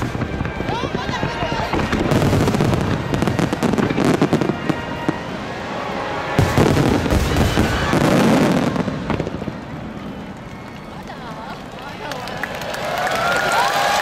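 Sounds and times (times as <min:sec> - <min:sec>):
fireworks bursting and crackling: 0:00.0 - 0:12.4.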